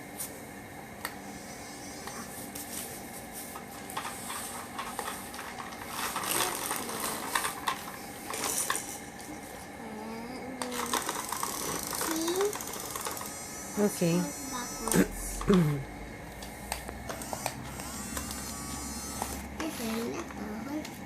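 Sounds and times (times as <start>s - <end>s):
small electric motor whirring: 1.2s - 20.8s
plastic clicking and clattering: 3.6s - 9.0s.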